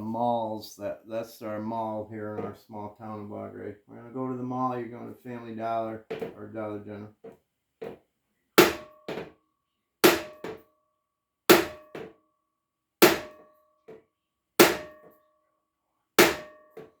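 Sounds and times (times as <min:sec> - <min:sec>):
hammer striking metal: 0:08.6 - 0:09.3, 0:10.0 - 0:10.6, 0:11.5 - 0:12.2, 0:13.0 - 0:13.5, 0:14.6 - 0:15.2, 0:16.2 - 0:17.0.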